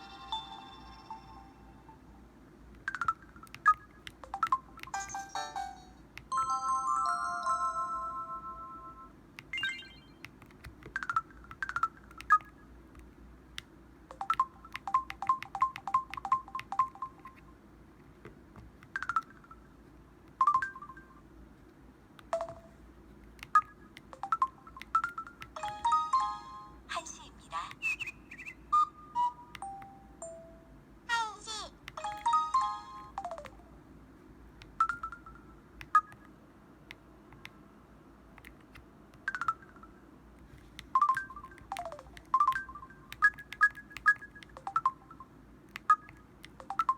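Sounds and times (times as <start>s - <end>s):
mobile phone electronic beeps: 7.4s - 10.3s, 14.1s - 17.4s, 23.5s - 26.5s, 34.8s - 36.3s, 40.9s - 46.9s.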